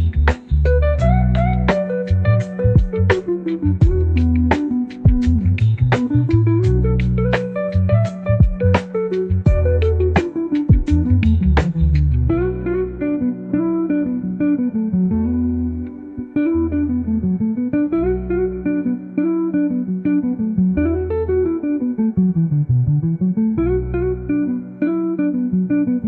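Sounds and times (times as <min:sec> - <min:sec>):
low bass notes: 0:00.0 - 0:26.0
plucked guitar: 0:00.0 - 0:26.0.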